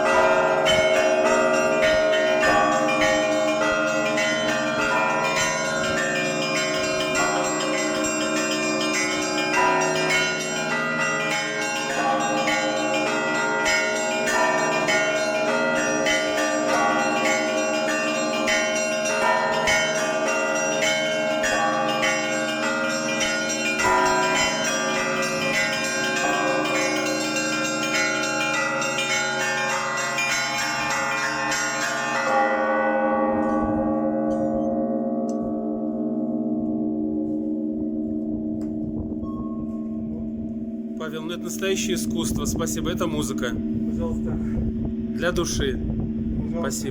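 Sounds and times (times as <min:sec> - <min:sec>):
small high bells chiming: 0:00.0 - 0:34.7
hum of big bells: 0:00.0 - 0:46.9.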